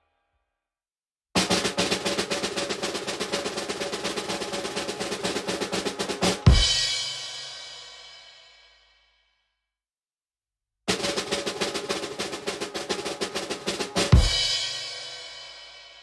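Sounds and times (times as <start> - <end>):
snare drum roll: 1.4 - 7.8, 10.9 - 16.0.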